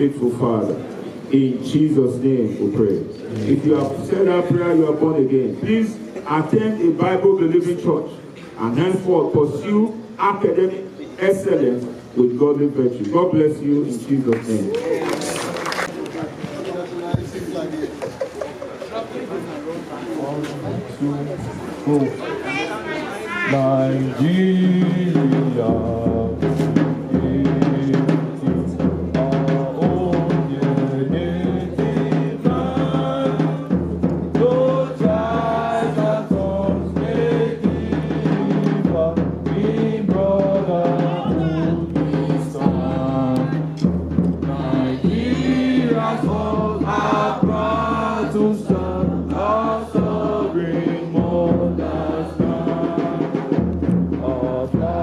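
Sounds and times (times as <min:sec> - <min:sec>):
drums beating: 0:03.6 - 0:07.9, 0:13.3 - 0:18.8, 0:22.5 - 0:55.0
group of voices singing: 0:23.1 - 0:55.0.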